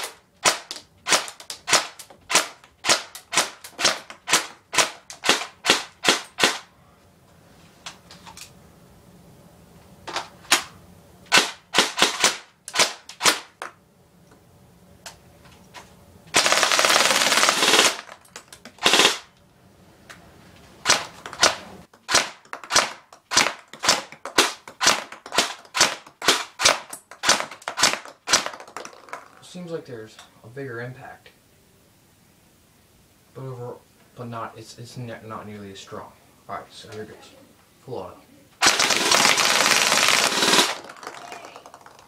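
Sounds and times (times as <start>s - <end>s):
airsoft gun firing: 0.0s - 6.7s, 11.3s - 13.6s, 16.4s - 18.2s, 18.8s - 19.3s, 20.8s - 29.2s, 38.6s - 41.5s.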